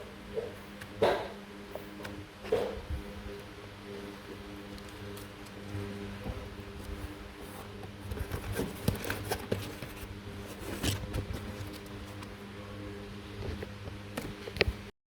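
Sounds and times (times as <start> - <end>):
low electrical hum: 0.0 - 14.9
packaging rustling and clicking: 7.6 - 12.3.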